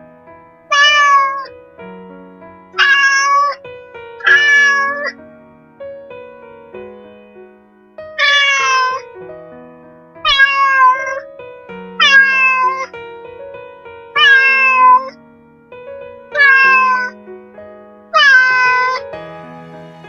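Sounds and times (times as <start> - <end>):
cat meowing: 0.7 - 1.5, 2.8 - 3.6, 4.2 - 5.1, 8.2 - 9.0, 10.2 - 11.2, 12.0 - 12.9, 14.2 - 15.1, 16.4 - 17.1, 18.2 - 19.0
background music: 17.2 - 20.0.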